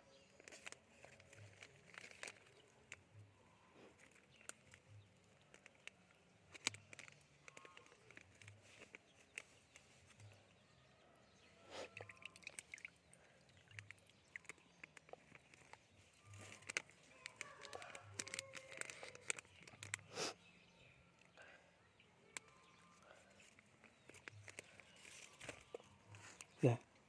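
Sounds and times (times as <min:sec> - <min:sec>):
small clicks and taps: 0:04.0 - 0:10.3, 0:13.5 - 0:20.0.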